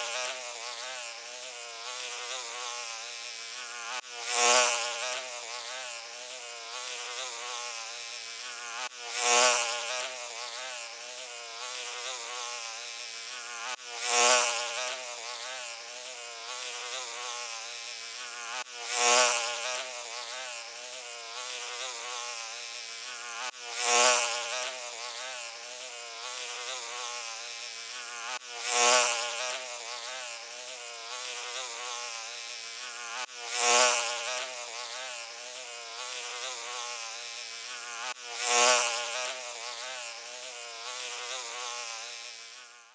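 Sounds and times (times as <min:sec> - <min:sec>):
fly buzzing: 0:00.0 - 0:42.9.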